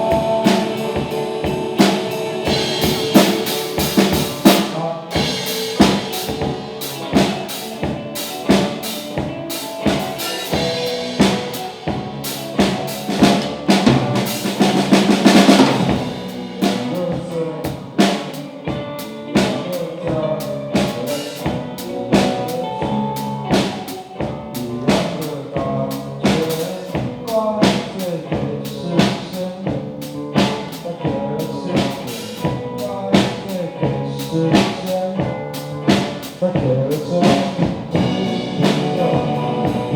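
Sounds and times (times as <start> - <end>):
drum kit beat: 0.0 - 39.9
rock band playing live: 0.0 - 39.9.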